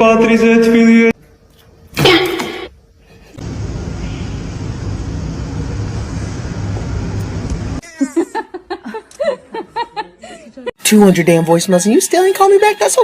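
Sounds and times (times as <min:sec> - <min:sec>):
low rumble with hiss: 0:03.4 - 0:07.8.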